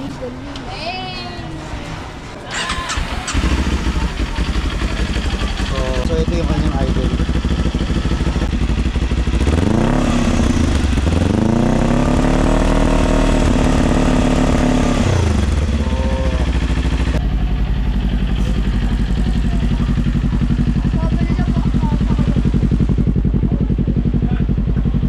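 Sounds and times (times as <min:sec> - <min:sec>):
motorcycle engine idling and revving: 0:02.5 - 0:25.0.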